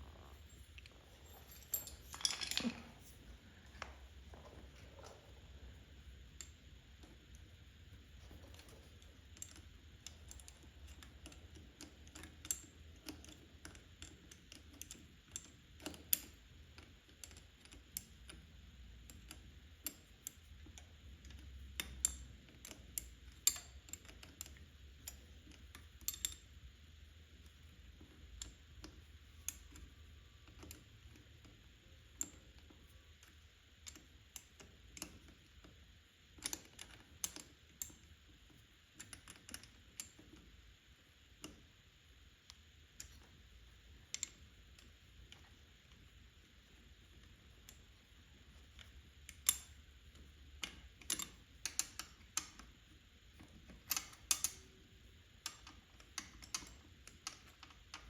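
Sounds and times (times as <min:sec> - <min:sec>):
faint room hum: 0:00.0 - 0:58.0
metal parts and tools clicking: 0:00.2 - 0:03.9, 0:53.8 - 0:54.6.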